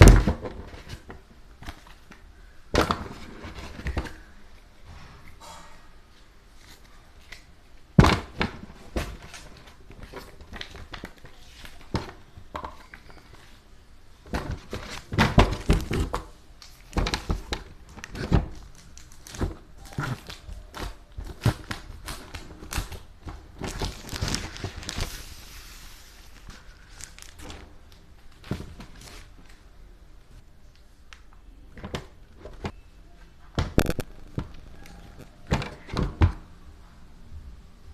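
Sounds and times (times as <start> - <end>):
packaging crinkling: 14.3 - 29.6
packaging rustling: 14.3 - 29.7.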